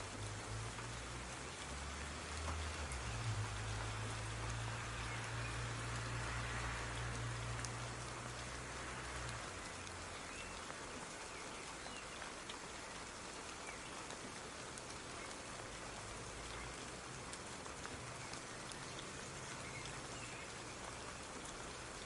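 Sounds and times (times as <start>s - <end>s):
soft steady rain: 0.0s - 22.0s.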